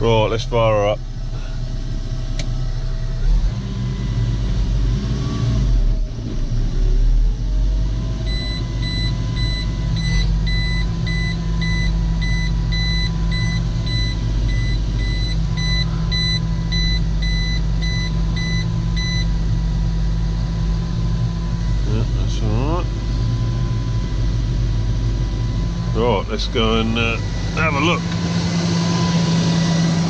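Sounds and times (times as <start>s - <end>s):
baler mechanical drone: 0.0s - 30.0s
electronic warning beeper: 8.3s - 19.4s.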